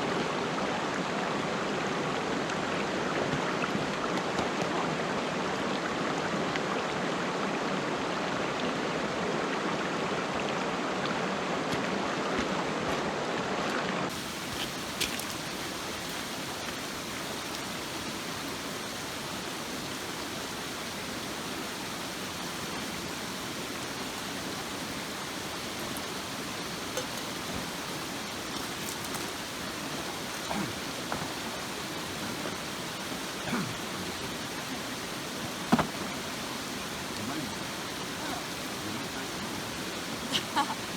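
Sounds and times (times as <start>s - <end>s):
river water rushing: 0.0s - 40.9s.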